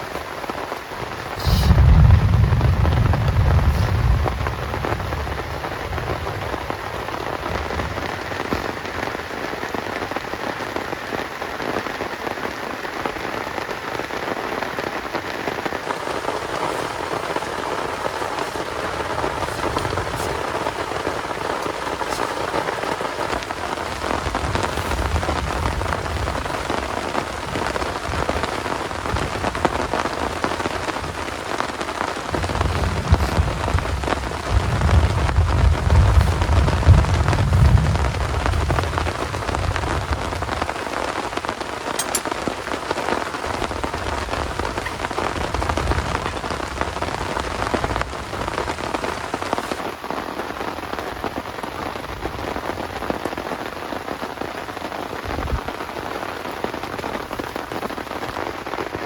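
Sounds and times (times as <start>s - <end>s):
heavy rain falling: 0.0s - 59.0s
low rumble: 1.4s - 8.6s, 32.3s - 40.7s.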